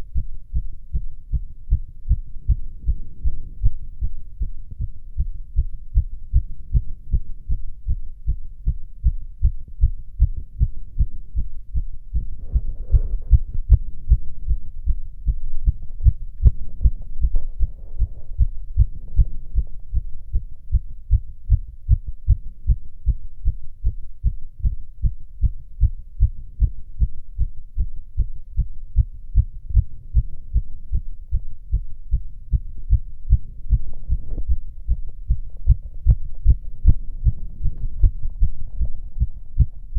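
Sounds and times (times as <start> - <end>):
fast heartbeat: 0.0 - 39.9
faint rustling: 15.6 - 19.9.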